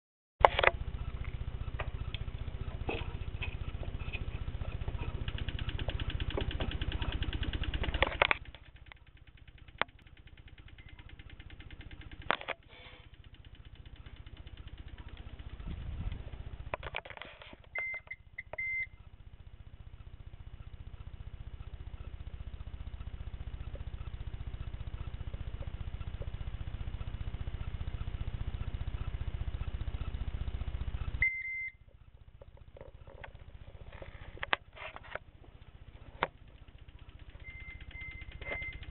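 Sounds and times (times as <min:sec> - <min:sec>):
rapid electrical clicking: 0:00.4 - 0:18.2, 0:19.9 - 0:31.2, 0:31.9 - 0:38.9
short high beep: 0:31.2 - 0:31.8.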